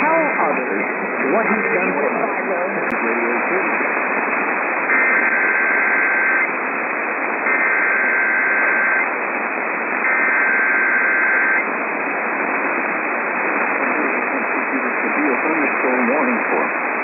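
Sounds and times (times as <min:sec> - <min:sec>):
radio static hiss: 0:00.0 - 0:17.0
screeching data bursts: 0:04.9 - 0:06.5, 0:07.5 - 0:09.1.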